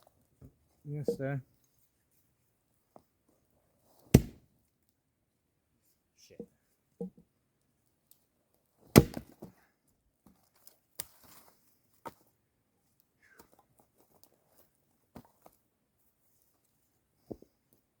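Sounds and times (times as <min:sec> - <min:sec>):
axe chopping firewood: 0:04.1 - 0:04.5, 0:08.9 - 0:09.5.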